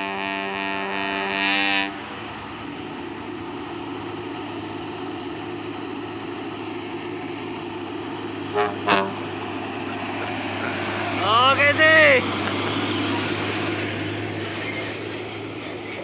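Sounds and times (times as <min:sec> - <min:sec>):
musical air horn chord: 0:00.0 - 0:02.0, 0:08.5 - 0:09.4
truck engine running: 0:01.1 - 0:16.0.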